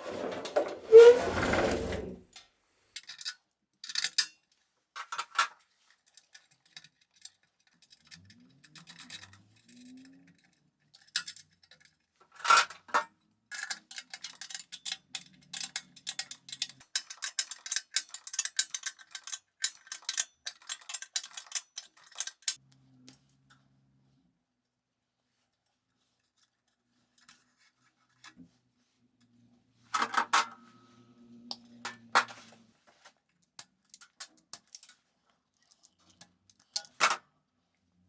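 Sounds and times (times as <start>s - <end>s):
small clicks taps and scrapes: 2.3s - 12.3s, 12.9s - 23.6s, 31.5s - 37.2s.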